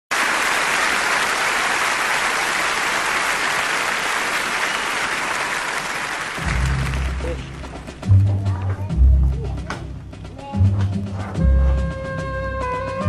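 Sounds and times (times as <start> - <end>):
audience applauding: 0.1 - 8.1.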